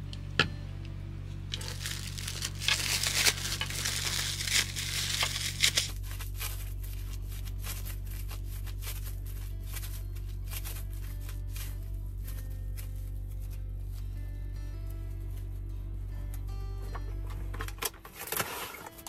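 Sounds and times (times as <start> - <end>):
plastic packaging crinkling: 1.5 - 14.1, 17.5 - 19.0.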